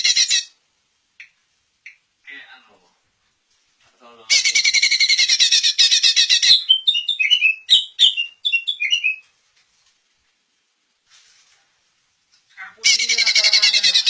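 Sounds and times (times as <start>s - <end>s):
bird singing chattering and whistling: 4.3s - 9.2s, 12.8s - 14.0s.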